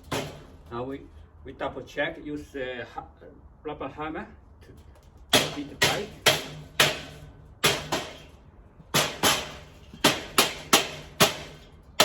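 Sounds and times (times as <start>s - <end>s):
rubber mallet knocking steel shelving: 5.4s - 8.3s, 8.9s - 12.0s.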